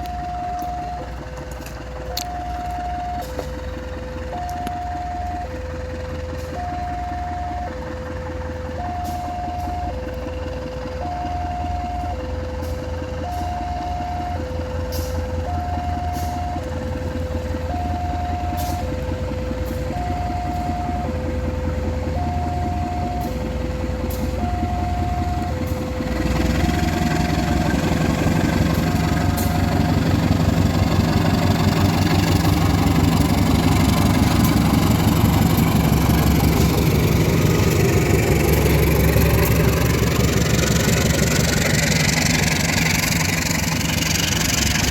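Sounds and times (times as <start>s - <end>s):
level crossing two-tone alarm: 0.0s - 1.1s, 2.1s - 3.4s, 4.4s - 5.6s, 6.6s - 7.8s, 8.8s - 10.1s, 11.0s - 12.2s, 13.2s - 14.5s, 15.5s - 16.7s, 17.7s - 18.9s, 22.2s - 23.4s, 24.4s - 25.6s.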